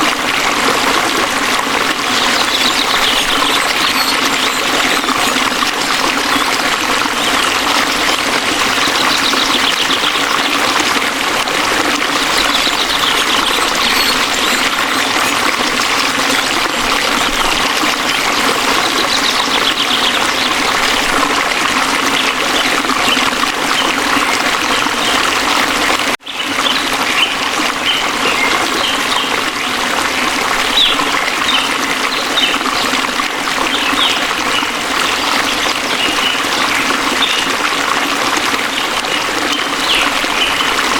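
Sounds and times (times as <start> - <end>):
waterfall rushing: 0.0 - 26.1
small birds chirping: 2.0 - 5.5, 7.2 - 10.8, 12.2 - 15.5, 18.1 - 21.1.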